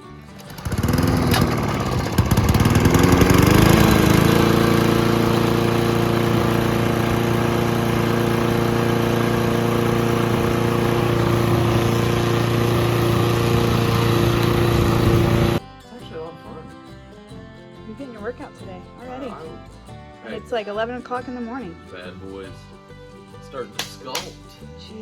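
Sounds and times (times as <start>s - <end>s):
push mower engine: 0.0s - 15.6s.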